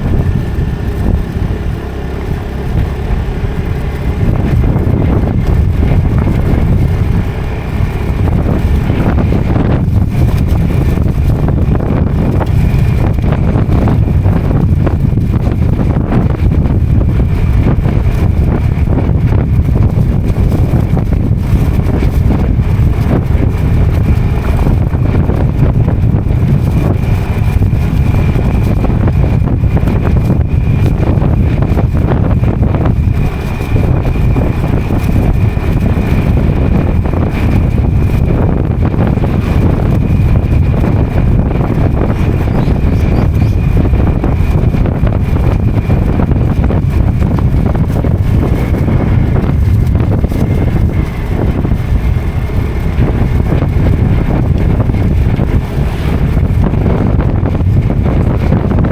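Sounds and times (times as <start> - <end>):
motorcycle running: 0.0 - 58.9
wind noise on microphone: 0.0 - 58.9.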